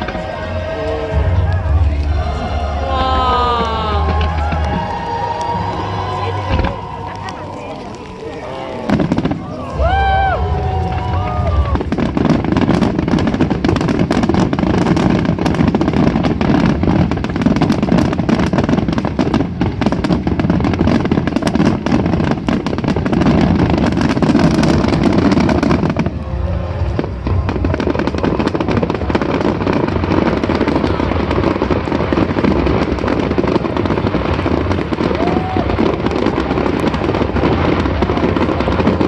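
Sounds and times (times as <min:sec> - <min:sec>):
fireworks crackling and popping: 0:00.0 - 0:39.0.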